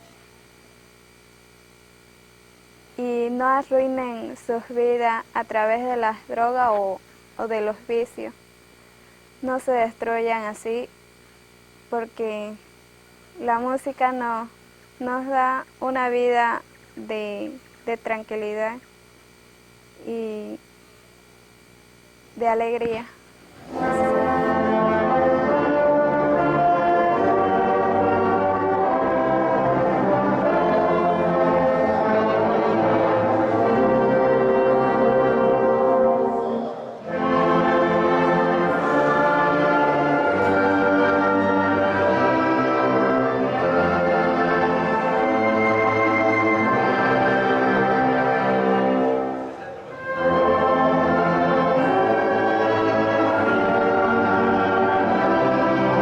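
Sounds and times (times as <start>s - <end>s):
orchestral music with brass: 23.6s - 56.0s.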